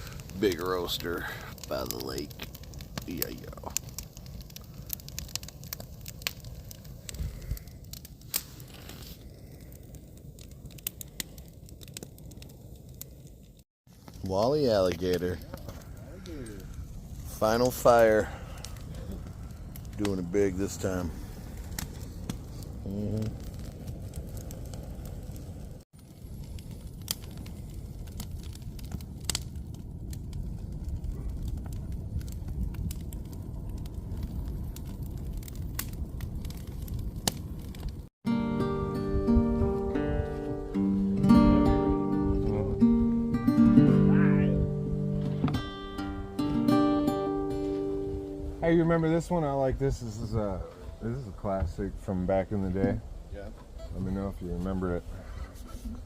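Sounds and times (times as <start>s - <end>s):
campfire crackling and popping: 0.0s - 56.0s
low fire rumble: 0.0s - 56.0s.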